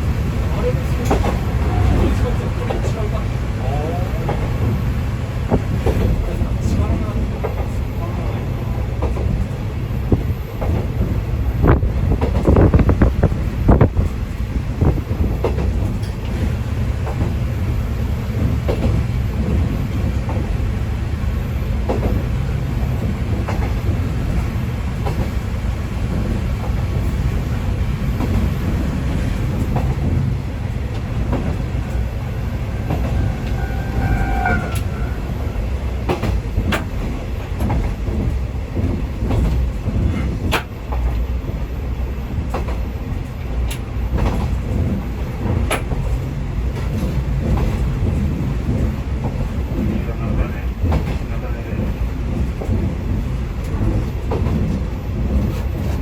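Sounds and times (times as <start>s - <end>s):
diesel railcar rumbling: 0.0s - 56.0s
clicks from rail joints: 32.7s - 41.3s, 42.5s - 50.0s.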